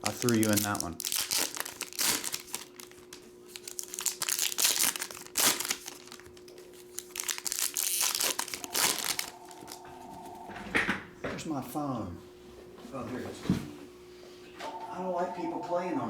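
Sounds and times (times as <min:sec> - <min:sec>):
plastic wrapping crinkling: 0:00.0 - 0:09.8.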